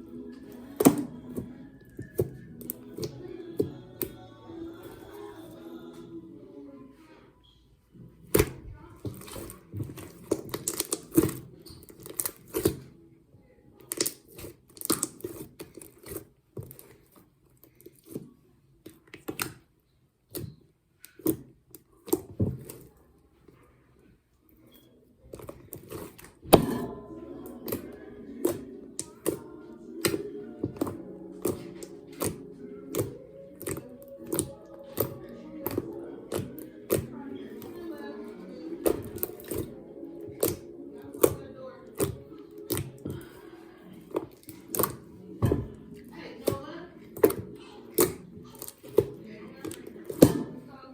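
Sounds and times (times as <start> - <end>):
slime popping and squishing: 0.2 - 4.2, 8.2 - 13.0, 13.8 - 23.0, 25.2 - 50.6
slime sticky pops: 13.8 - 16.8, 30.0 - 37.7, 38.8 - 43.3, 44.1 - 45.7.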